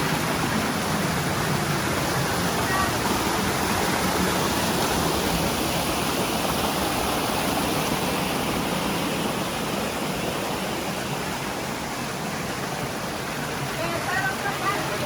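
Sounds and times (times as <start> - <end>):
creek water rushing: 0.0 - 15.0.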